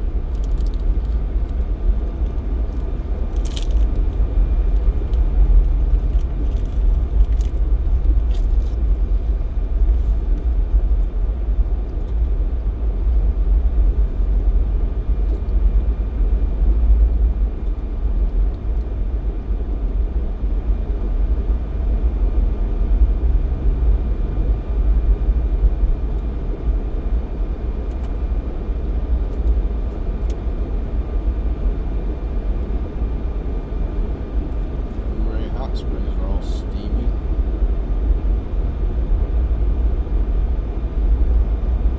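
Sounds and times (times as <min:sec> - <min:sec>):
car engine and tyre noise: 0:00.0 - 0:41.9.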